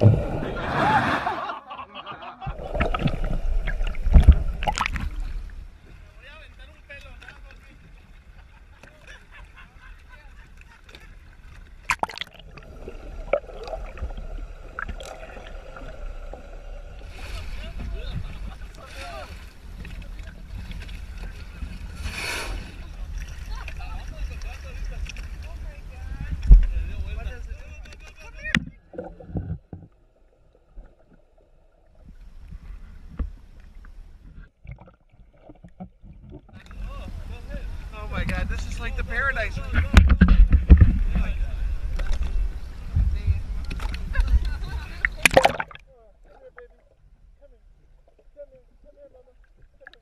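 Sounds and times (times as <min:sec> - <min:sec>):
water sloshing against boat: 0:02.4 - 0:50.0
wind rumble on microphone: 0:36.9 - 0:45.3.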